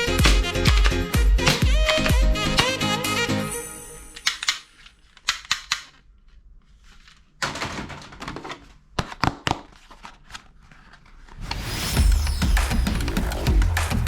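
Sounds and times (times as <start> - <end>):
toy gun plastic clicks: 4.1 - 6.0.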